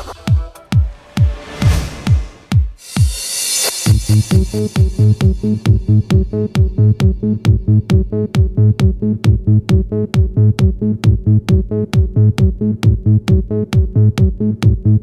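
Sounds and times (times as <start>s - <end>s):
kick-drum beat: 0.0s - 3.3s, 3.9s - 15.0s
synth bassline: 0.6s - 15.0s
sharp high percussion: 0.8s - 7.1s.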